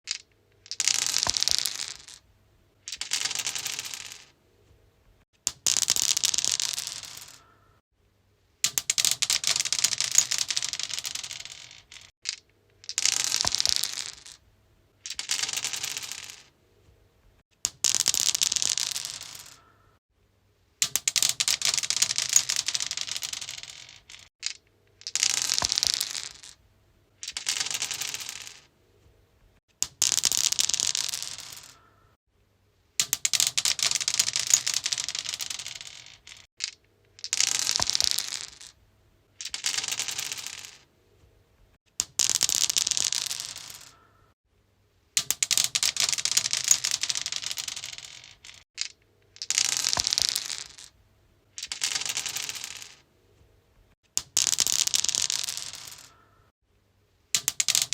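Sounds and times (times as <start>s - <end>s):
dice rattling on stone: 0.0s - 2.2s, 2.8s - 4.4s, 5.5s - 7.4s, 8.6s - 14.4s, 15.0s - 16.5s, 17.6s - 19.6s, 20.8s - 26.6s, 27.2s - 28.7s, 29.8s - 31.8s, 33.0s - 38.8s, 39.4s - 40.9s, 42.0s - 44.0s, 45.2s - 53.0s, 54.2s - 56.3s, 57.3s - 57.9s.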